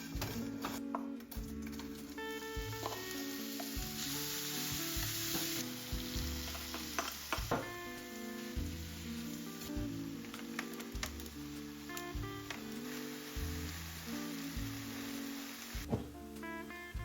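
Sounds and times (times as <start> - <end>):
food sizzling in a pan: 0.0 - 15.9
utensil clicking against pan: 6.4 - 7.7.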